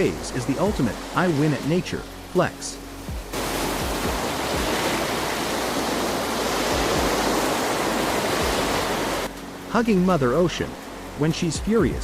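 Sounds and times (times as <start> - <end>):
ocean waves crashing: 0.0 - 12.0.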